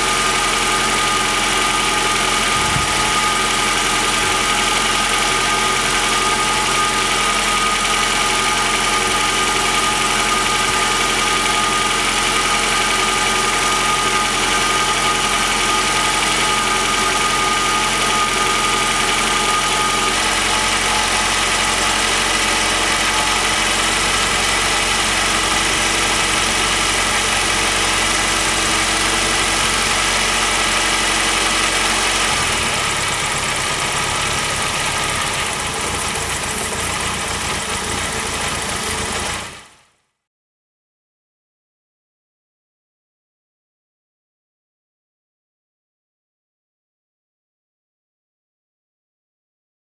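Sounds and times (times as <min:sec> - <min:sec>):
car engine idling: 0:00.0 - 0:39.8.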